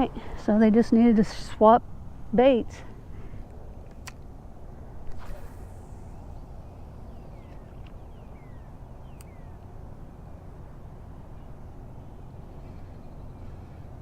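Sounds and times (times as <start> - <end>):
bird chirps: 6.0 - 9.6.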